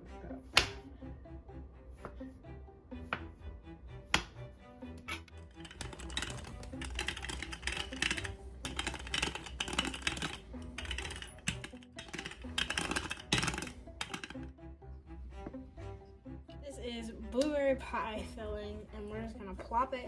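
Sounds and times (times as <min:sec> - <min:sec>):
background music: 0:00.0 - 0:20.0.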